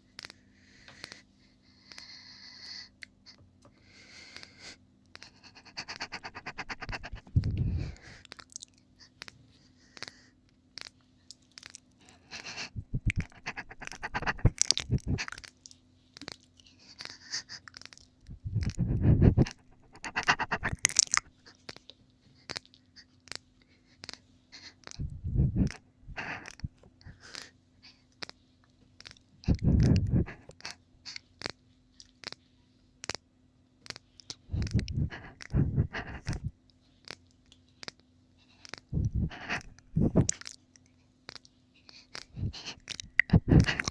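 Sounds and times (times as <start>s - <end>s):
faint steady hum: 0.0s - 43.9s
wet mouth clicks and smacks: 5.8s - 9.3s, 10.8s - 23.4s, 33.8s - 38.0s, 38.6s - 43.9s
breathy bursts: 34.5s - 36.5s.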